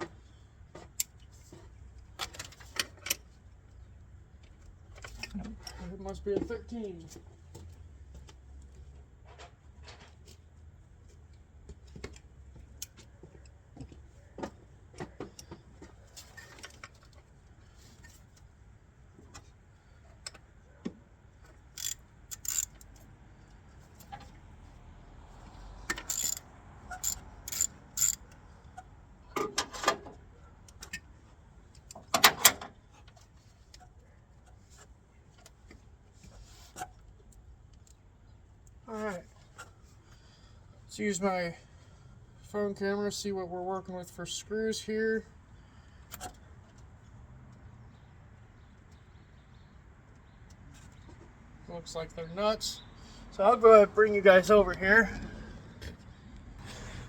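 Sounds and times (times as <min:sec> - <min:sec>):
metal hand tools clinking: 0:26.0 - 0:26.4.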